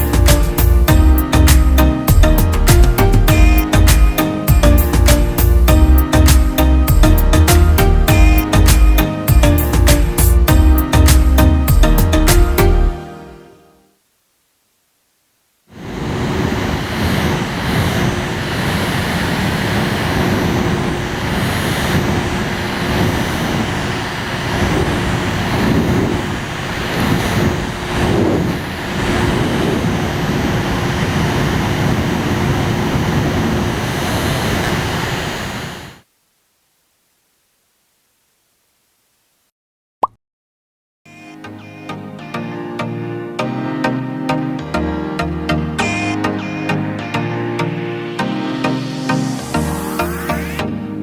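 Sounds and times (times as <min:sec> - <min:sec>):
electric fan running: 0:15.9 - 0:36.0.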